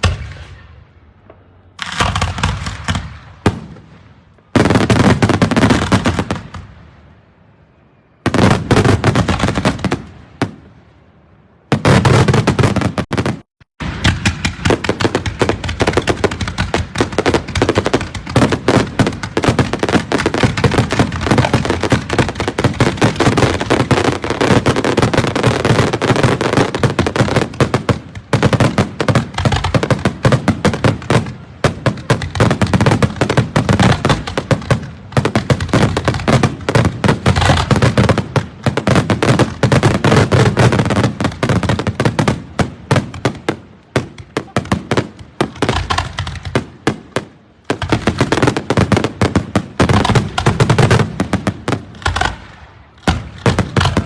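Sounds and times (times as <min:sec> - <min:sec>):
fireworks bangs and crackling bursts: 0:00.0 - 0:10.9, 0:11.6 - 0:54.0.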